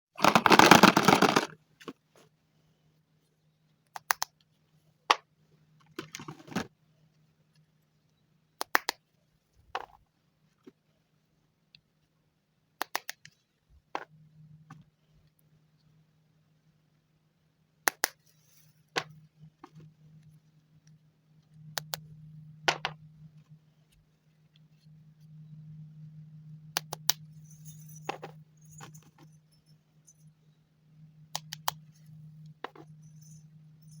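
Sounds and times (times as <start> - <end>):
plastic figurines clicking: 0.2 - 1.5
low hum: 19.4 - 34.0.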